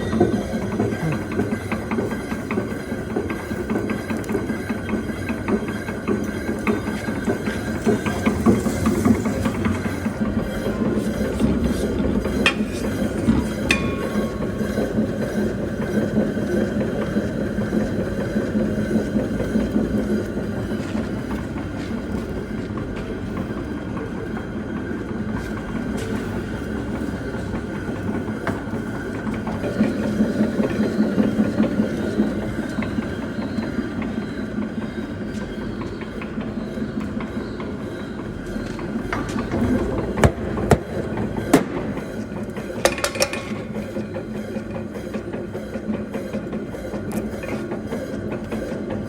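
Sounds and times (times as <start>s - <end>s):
stone mill grinding: 0.0s - 23.8s.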